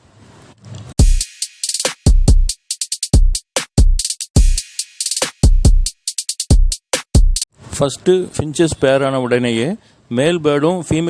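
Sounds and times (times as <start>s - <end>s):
drum machine beat: 1.0s - 7.5s.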